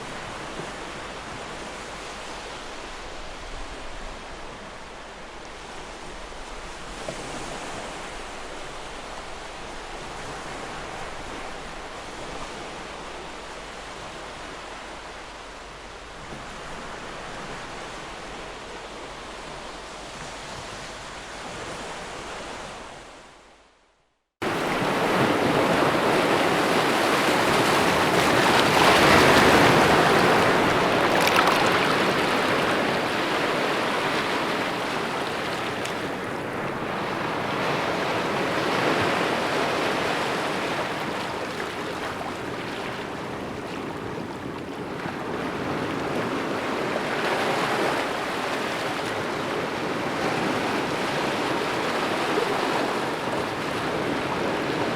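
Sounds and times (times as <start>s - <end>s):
ocean waves breaking: 24.4s - 54.9s.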